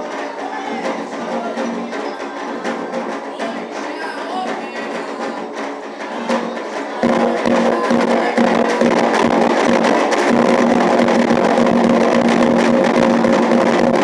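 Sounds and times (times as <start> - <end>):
group singing: 0.0 - 11.0
hand drums beating: 0.0 - 14.0.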